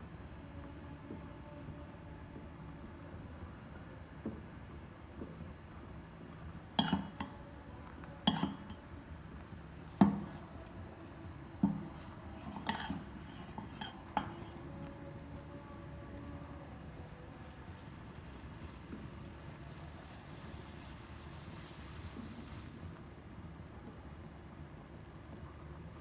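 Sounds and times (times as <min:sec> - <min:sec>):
utensil knocking on cookware: 0:06.8 - 0:07.3, 0:10.0 - 0:10.4, 0:11.6 - 0:14.5.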